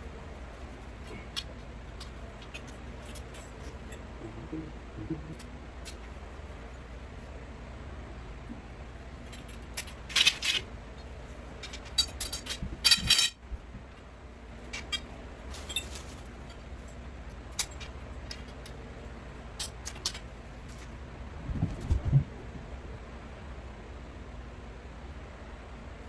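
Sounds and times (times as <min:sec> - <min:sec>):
metal poles clinking and clattering: 0:00.0 - 0:04.0, 0:09.1 - 0:14.0, 0:14.6 - 0:18.8, 0:19.6 - 0:20.9
steady low hum: 0:00.0 - 0:26.0.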